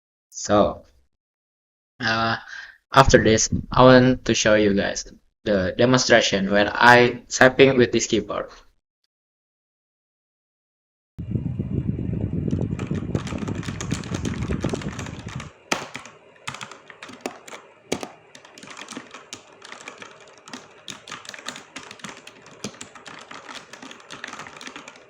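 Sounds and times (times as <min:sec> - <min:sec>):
fast typing on mechanical keyboard: 0:12.5 - 0:25.0.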